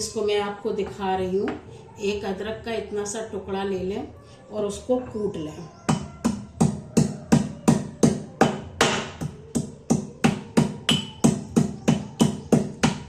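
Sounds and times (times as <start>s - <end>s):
pestle pounding ginger: 5.9s - 13.0s.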